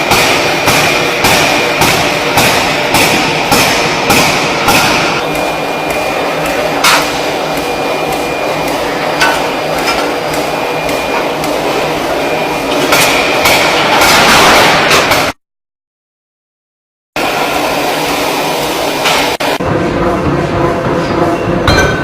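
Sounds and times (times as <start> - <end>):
hammer striking metal: 0.0 - 11.7, 21.6 - 22.0
workshop machinery din: 0.0 - 15.4, 17.2 - 22.0.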